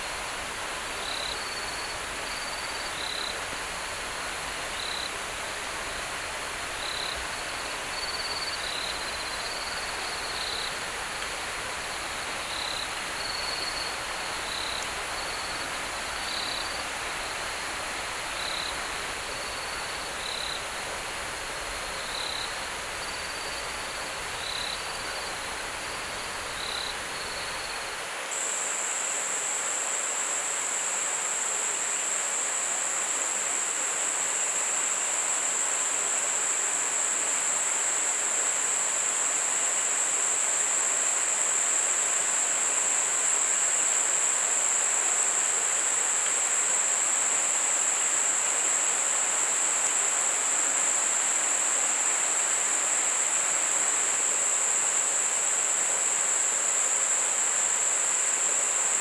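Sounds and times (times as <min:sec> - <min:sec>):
flowing river water: 0:00.0 - 0:59.0
high-pitched insect drone: 0:06.8 - 0:10.8.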